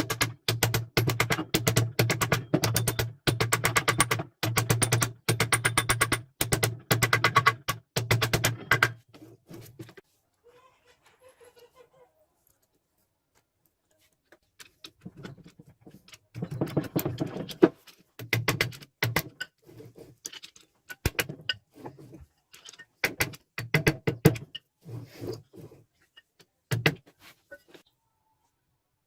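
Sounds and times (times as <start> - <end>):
metal parts clinking: 18.7 - 21.7, 22.4 - 23.0
rasping scraping noise: 24.8 - 26.1.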